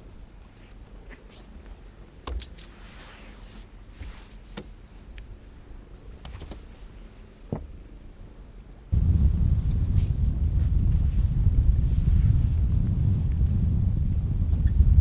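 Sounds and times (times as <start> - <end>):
soft rustling: 2.6 - 5.3
steady low rumble: 8.9 - 15.0.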